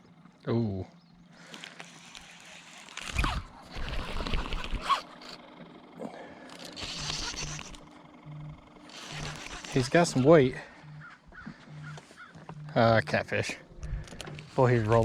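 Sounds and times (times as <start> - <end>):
fishing reel zipping: 1.4 - 5.4, 6.5 - 12.8, 13.8 - 15.0.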